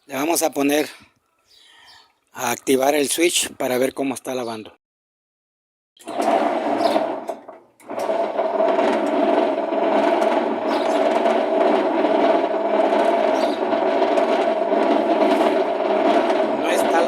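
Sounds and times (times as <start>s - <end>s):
washing machine motor humming: 6.0s - 17.0s.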